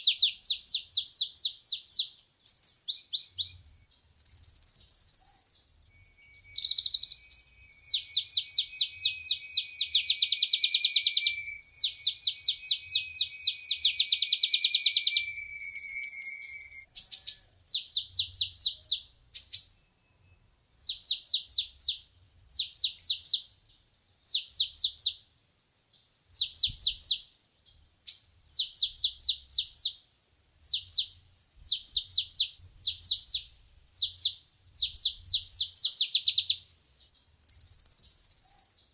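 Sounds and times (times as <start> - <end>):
sunbird singing high sharp notes: 0.0 - 23.5, 26.3 - 30.0, 37.4 - 38.9
steady lower whistle: 5.8 - 16.9.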